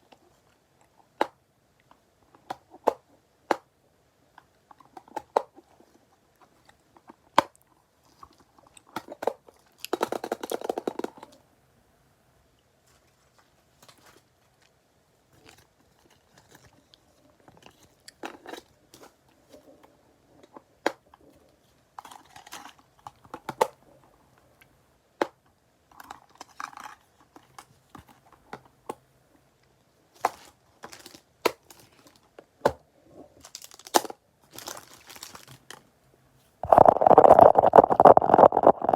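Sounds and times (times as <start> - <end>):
plastic packaging crinkling: 33.4 - 35.8, 36.6 - 38.9.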